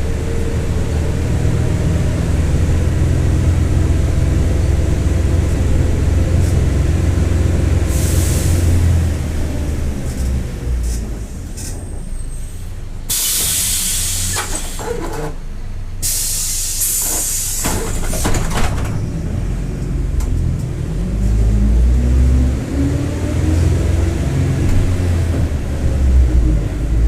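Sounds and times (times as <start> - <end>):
bus diesel engine: 0.0 - 27.0
compressed air hiss: 13.1 - 15.0, 16.0 - 17.7
rising engine whine: 19.0 - 27.0.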